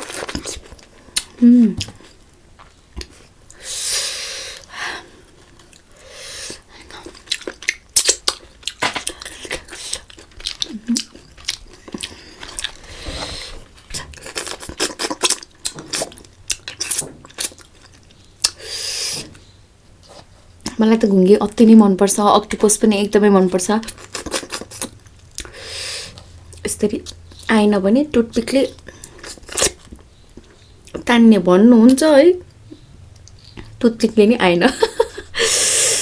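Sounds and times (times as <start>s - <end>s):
chewing: 6.8s - 18.6s.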